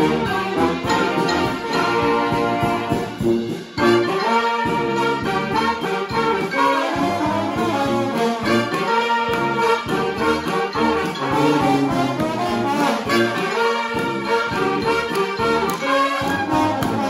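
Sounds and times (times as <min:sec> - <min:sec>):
brass band playing: 0:00.0 - 0:17.0.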